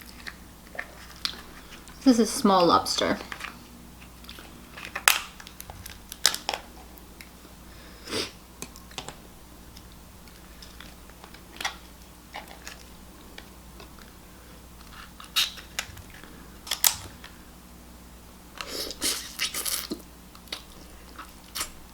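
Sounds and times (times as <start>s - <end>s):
lobster shell cracking: 4.1s - 7.3s, 14.8s - 17.3s.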